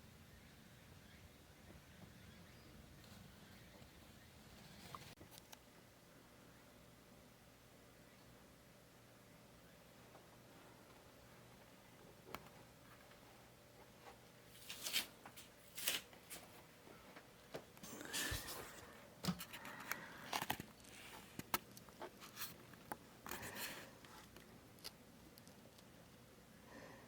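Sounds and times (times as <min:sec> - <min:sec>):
kitten scratching and rustling: 0:20.4 - 0:25.6.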